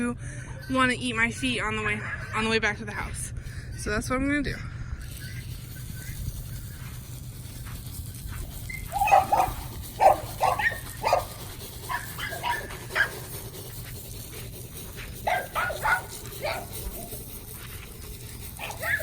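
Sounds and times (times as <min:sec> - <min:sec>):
dogs barking: 0:01.6 - 0:02.6, 0:08.8 - 0:13.5, 0:15.1 - 0:17.3, 0:18.3 - 0:19.0.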